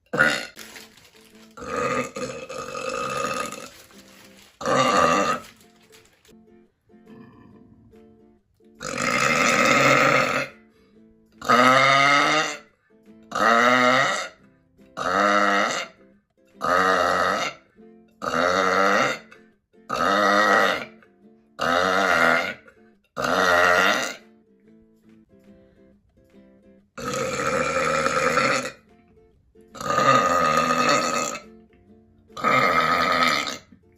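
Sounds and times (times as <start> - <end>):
person burping loudly: 0.0 - 6.1, 7.0 - 7.9, 8.8 - 10.7, 11.4 - 12.7, 13.3 - 14.4, 15.0 - 16.0, 16.6 - 24.3, 27.0 - 28.9, 29.7 - 31.6, 32.4 - 33.8
faint background music: 0.0 - 33.9.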